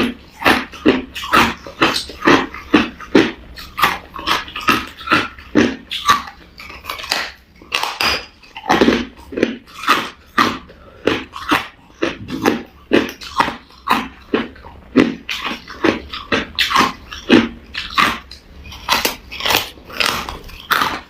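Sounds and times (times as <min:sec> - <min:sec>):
ice crunched between teeth: 0:15.3 - 0:21.0.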